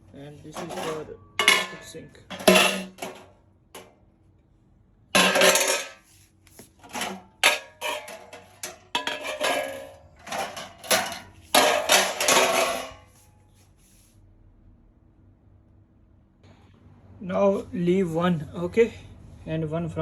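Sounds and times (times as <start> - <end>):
metal parts clattering: 0.5 - 3.3, 5.2 - 6.1, 6.8 - 13.1.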